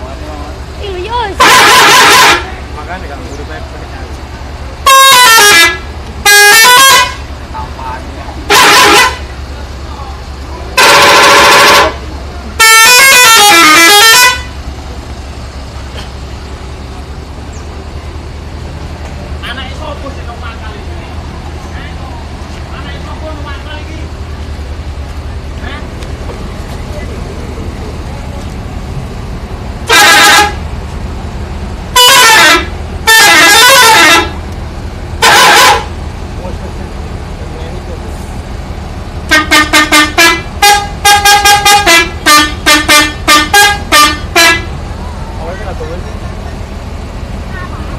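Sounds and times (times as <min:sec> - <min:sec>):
low steady rumble: 0:00.0 - 0:47.9
melodic bus horn: 0:01.1 - 0:02.8, 0:04.8 - 0:07.5, 0:08.4 - 0:09.6, 0:10.7 - 0:14.8, 0:29.8 - 0:30.8, 0:31.9 - 0:34.5, 0:35.2 - 0:36.0, 0:39.3 - 0:44.8.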